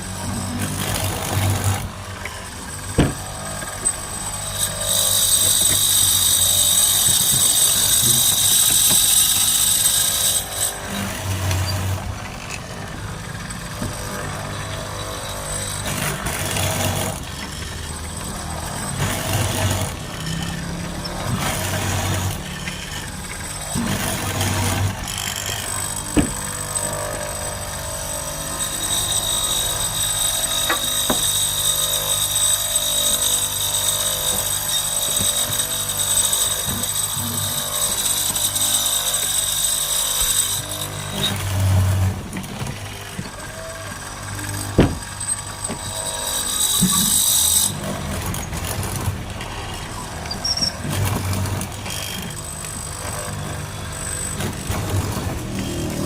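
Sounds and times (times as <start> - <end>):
power tool whining: 0.0 - 56.0
knocks: 44.8 - 45.1.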